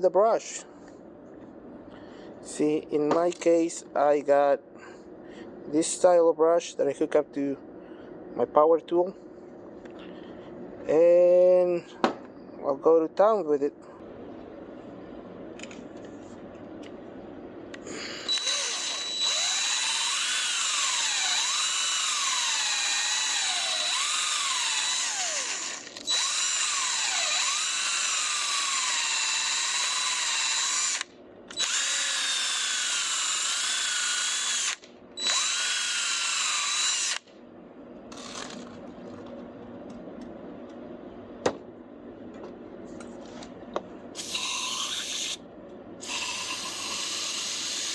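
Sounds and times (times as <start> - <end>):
power drill spinning brush: 18.3 - 31.0, 44.2 - 45.4, 46.0 - 47.9.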